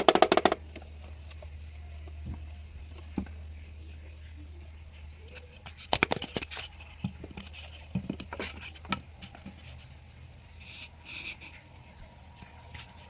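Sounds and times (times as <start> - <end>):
steady low hum: 0.0 - 13.0
small objects clicking and tapping: 5.4 - 9.7.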